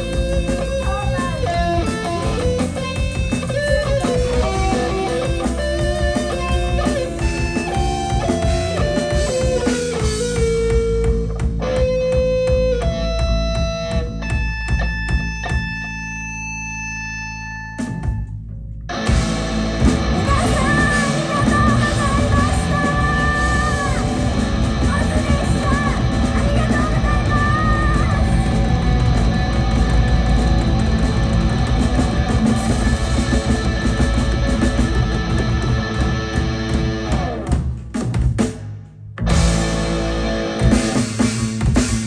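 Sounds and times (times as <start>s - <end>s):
live band playing noise rock: 0.0s - 16.3s, 18.9s - 38.6s, 39.2s - 42.0s
distorted electric guitar chord: 19.0s - 37.6s, 39.3s - 41.3s.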